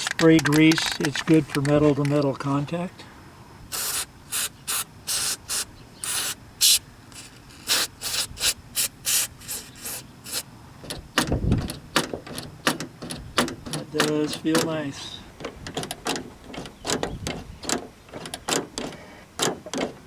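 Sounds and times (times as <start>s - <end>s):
aerosol spray hissing: 3.7s - 10.5s.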